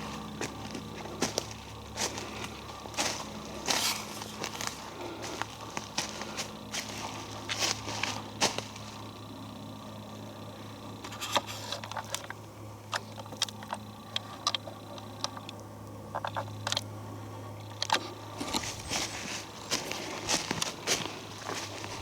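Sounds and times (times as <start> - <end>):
footsteps in dry leaves: 0.0 - 9.0, 18.4 - 22.0
low hum: 0.0 - 22.0.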